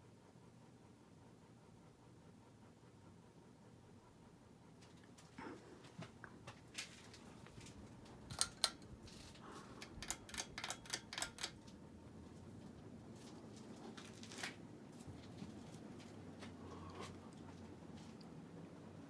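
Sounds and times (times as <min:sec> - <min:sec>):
ceiling fan running faintly: 0:00.0 - 0:19.0
sharp clicks: 0:08.1 - 0:08.9, 0:09.8 - 0:11.6.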